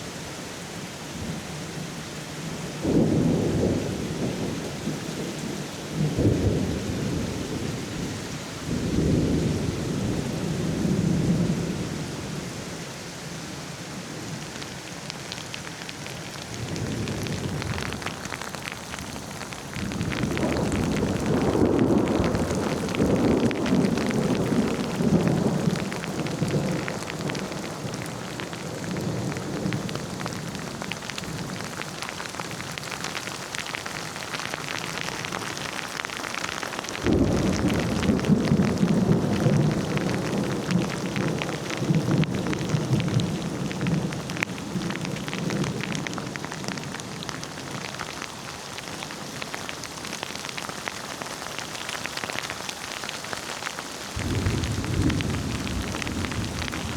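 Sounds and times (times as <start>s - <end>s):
heavy rain: 0.0s - 56.9s
rolling thunder: 19.7s - 30.4s, 37.0s - 44.2s, 54.2s - 56.9s.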